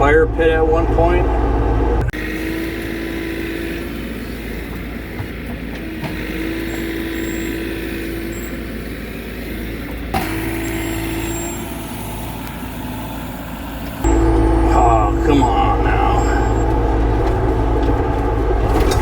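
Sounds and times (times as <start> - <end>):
diesel engine under load: 0.0 - 19.0
low steady whine: 6.6 - 19.0.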